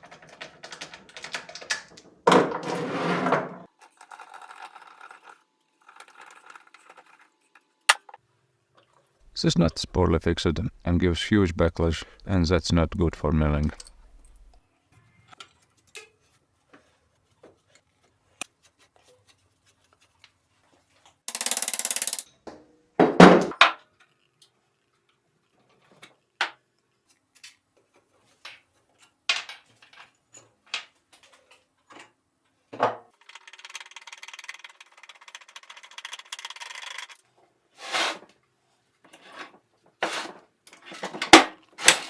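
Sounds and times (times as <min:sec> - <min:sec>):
metal parts clinking: 0:13.6 - 0:14.6, 0:21.3 - 0:22.3.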